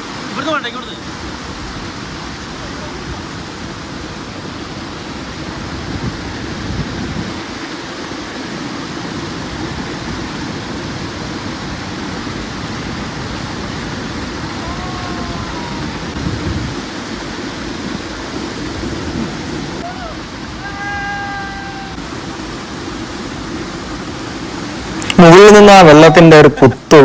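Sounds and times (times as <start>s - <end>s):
large waterfall rushing: 0.0s - 27.0s
wind buffeting the microphone: 1.2s - 8.4s, 9.2s - 21.2s.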